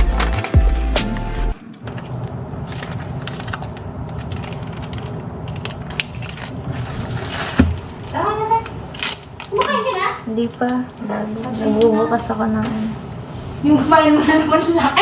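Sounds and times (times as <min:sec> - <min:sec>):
packaging crinkling: 0:01.6 - 0:10.9.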